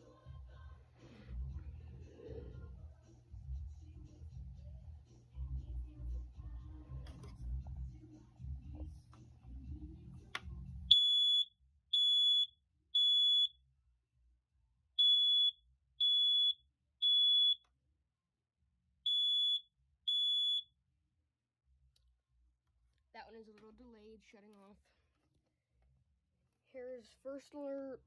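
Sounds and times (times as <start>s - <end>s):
smoke alarm beeping: 10.9s - 13.5s, 15.0s - 17.6s, 19.1s - 20.6s.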